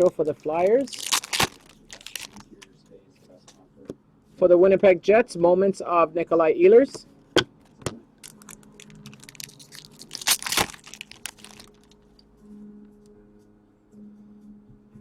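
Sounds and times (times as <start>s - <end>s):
foil wrapper crinkling and tearing: 0.0s - 2.6s, 8.2s - 12.0s.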